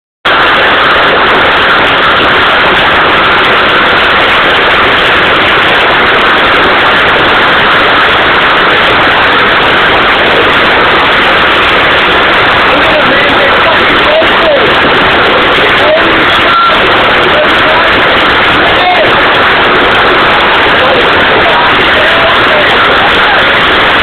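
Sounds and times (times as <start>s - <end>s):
hail and heavy rain falling: 0.3s - 24.0s.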